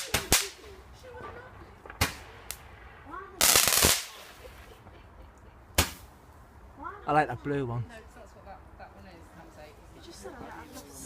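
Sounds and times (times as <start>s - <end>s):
rapid crackling firework bangs: 0.0s - 4.7s
firework bang: 1.7s - 4.6s.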